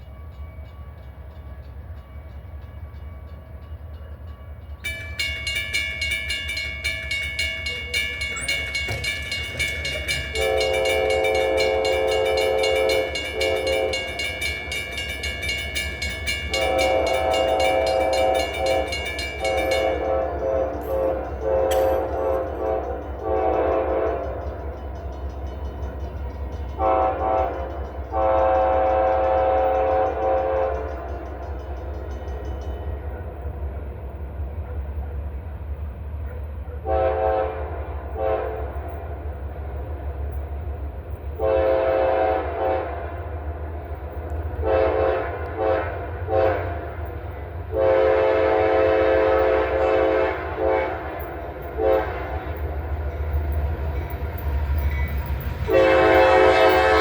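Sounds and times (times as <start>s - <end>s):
low rumble of train: 0.0s - 57.0s
locomotive air horn blasts: 10.2s - 14.2s, 16.5s - 24.4s, 26.8s - 31.0s, 36.8s - 38.8s, 41.4s - 43.2s, 44.6s - 47.0s, 47.7s - 52.6s, 55.6s - 57.0s.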